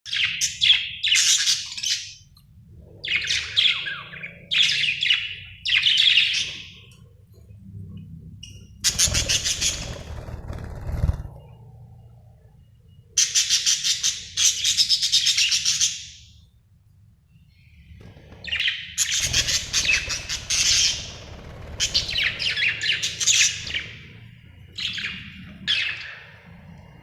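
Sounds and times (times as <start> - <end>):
budgerigar chirping: 18.6 - 23.9.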